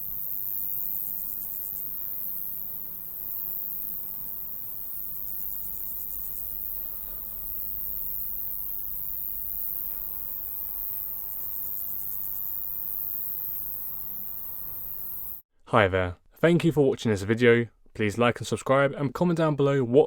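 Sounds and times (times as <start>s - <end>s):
grasshopper trill: 0.0s - 15.4s.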